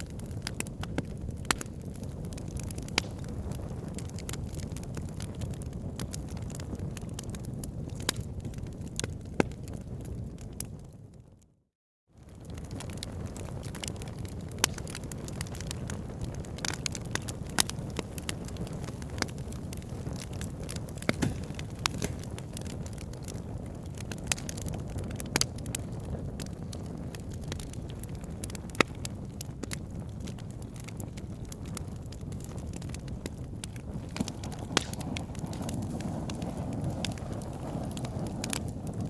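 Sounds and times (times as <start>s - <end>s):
wood crackling and popping: 0.0s - 10.9s, 12.2s - 39.0s
fire flame rushing: 12.2s - 39.0s.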